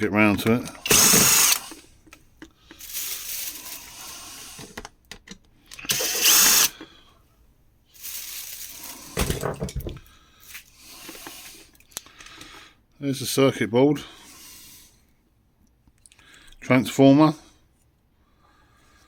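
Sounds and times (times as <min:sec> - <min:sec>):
parts rustling and clattering: 0:00.3 - 0:07.0, 0:07.9 - 0:12.5
cordless drill motor whine: 0:00.8 - 0:01.8, 0:05.8 - 0:06.8.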